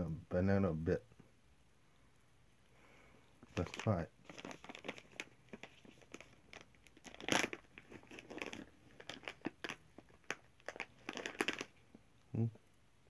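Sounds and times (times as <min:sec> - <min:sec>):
snack packaging crinkling: 0:03.4 - 0:12.0
chewing chewy snack: 0:04.3 - 0:11.9.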